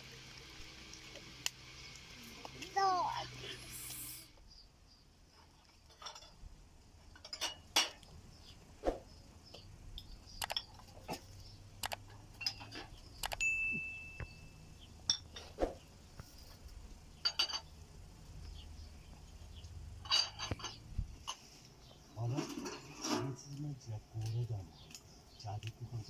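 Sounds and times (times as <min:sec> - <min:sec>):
dishes and utensils clinking: 0:05.8 - 0:06.4, 0:07.1 - 0:08.1, 0:12.2 - 0:14.4, 0:15.1 - 0:15.6, 0:17.2 - 0:17.7, 0:20.0 - 0:21.6, 0:22.3 - 0:23.6
short ringing ding: 0:13.4 - 0:14.6.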